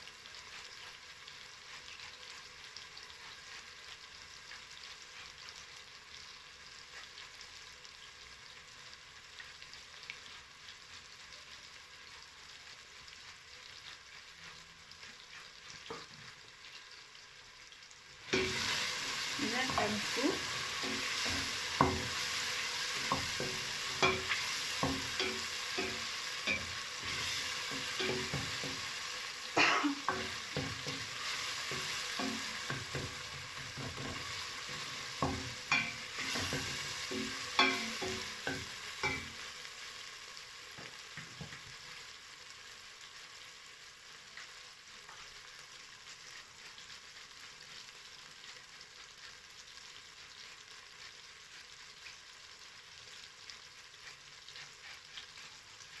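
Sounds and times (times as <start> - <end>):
tomatoes sizzling in pan: 0.0 - 56.0
spoon knocking and scraping pan: 14.5 - 16.4, 18.3 - 29.2, 30.0 - 39.5, 40.8 - 41.8.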